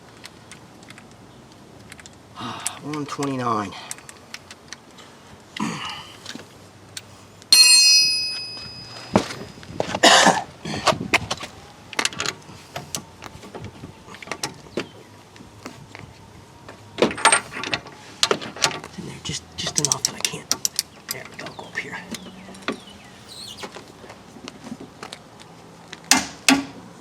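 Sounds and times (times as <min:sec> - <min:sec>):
ringing metal strike: 0:07.5 - 0:09.3
hand tools clinking on metal: 0:07.5 - 0:09.6.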